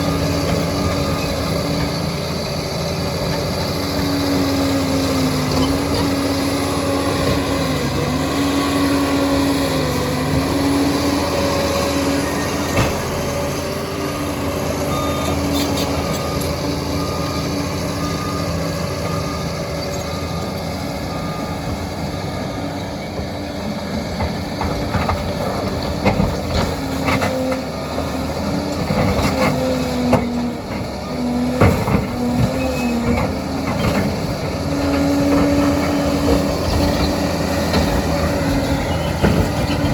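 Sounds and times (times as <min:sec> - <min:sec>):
diesel engine droning: 0:00.0 - 0:39.9
steel tracks knocking and clanking: 0:23.1 - 0:39.9.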